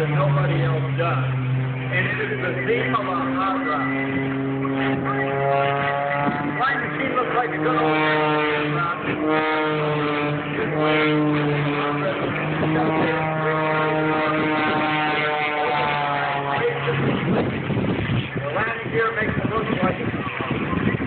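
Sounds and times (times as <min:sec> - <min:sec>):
propeller plane engine drone: 0:00.0 - 0:21.0.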